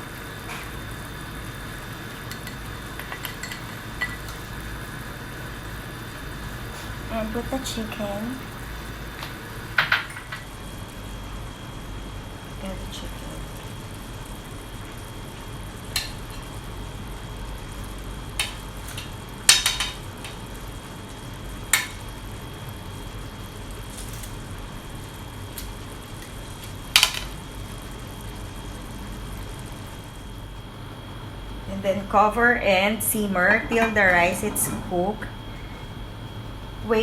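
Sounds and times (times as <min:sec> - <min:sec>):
steady hiss: 0:00.0 - 0:37.0
utensils clinking against pot: 0:02.3 - 0:04.4.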